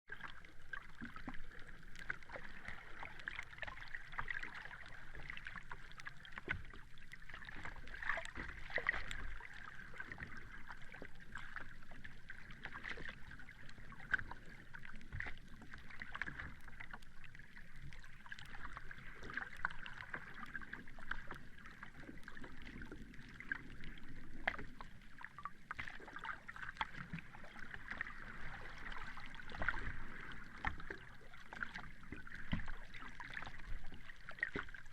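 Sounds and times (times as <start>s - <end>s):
sea water lapping: 0.1s - 34.9s.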